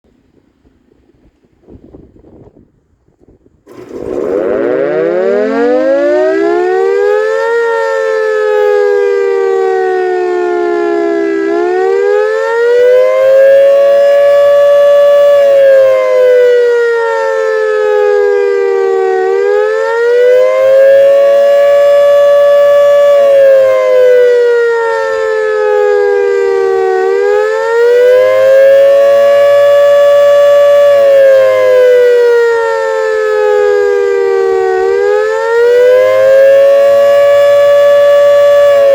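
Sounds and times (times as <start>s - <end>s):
warning siren wailing: 3.7s - 38.9s.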